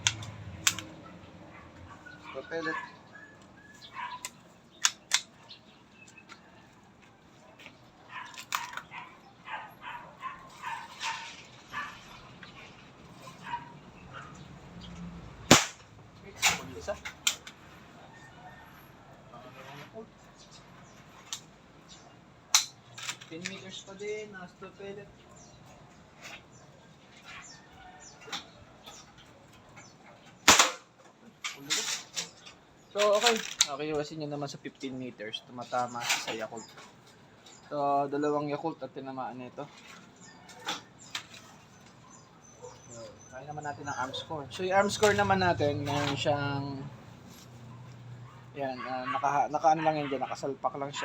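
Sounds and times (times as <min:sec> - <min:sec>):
sharp clicks: 0:00.0 - 0:01.0, 0:04.2 - 0:06.4
dog barking: 0:01.0 - 0:04.3, 0:08.0 - 0:12.1, 0:13.2 - 0:14.4, 0:42.1 - 0:43.2, 0:47.6 - 0:51.0
air pistol shot: 0:15.5 - 0:15.8, 0:30.5 - 0:30.8.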